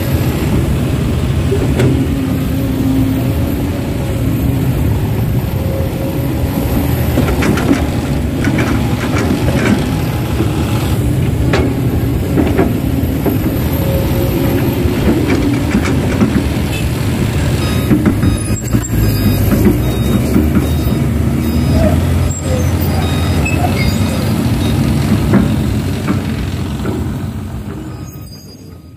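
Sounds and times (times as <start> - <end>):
diesel engines rumbling: 0.0 - 28.9
clicks and knocks: 7.2 - 13.6, 14.5 - 16.8.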